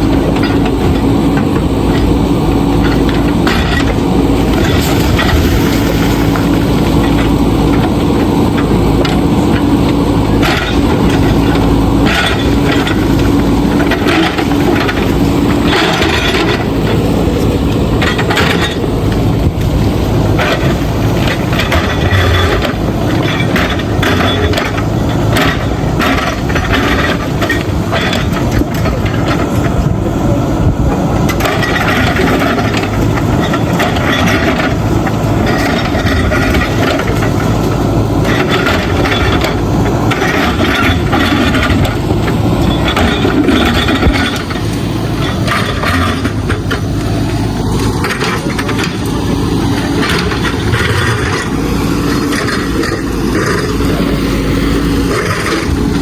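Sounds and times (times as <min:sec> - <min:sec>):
backhoe diesel engine: 0:00.0 - 0:56.0
bricks and stones clattering: 0:02.8 - 0:07.4.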